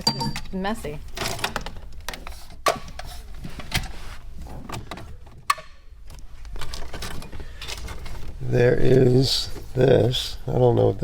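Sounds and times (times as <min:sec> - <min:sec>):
rustling of wiring: 0:06.0 - 0:10.7.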